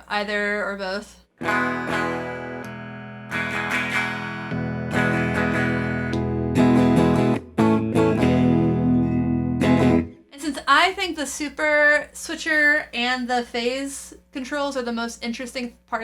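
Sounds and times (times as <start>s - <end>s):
electric guitar strummed chords: 1.4s - 10.2s.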